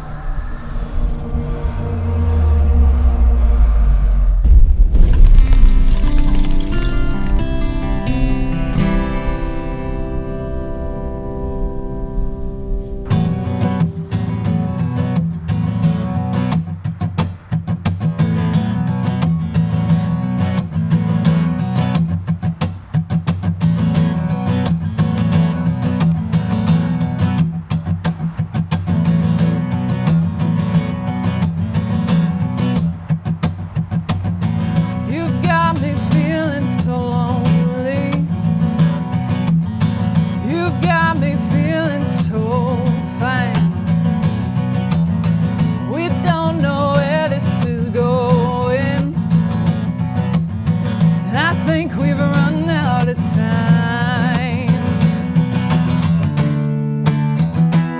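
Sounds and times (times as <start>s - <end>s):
strummed acoustic guitar: 4.4s - 57.9s
person singing: 35.1s - 38.3s, 40.4s - 43.7s, 45.9s - 49.2s, 51.3s - 54.8s.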